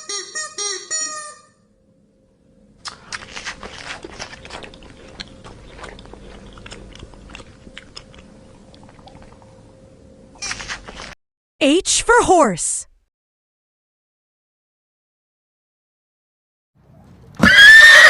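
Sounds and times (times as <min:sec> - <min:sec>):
giraffe chewing and crunching food: 0:02.8 - 0:09.6, 0:10.4 - 0:11.2.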